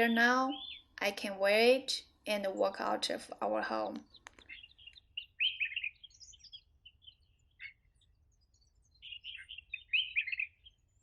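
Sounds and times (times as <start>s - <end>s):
songbird chirping: 0.0s - 11.0s.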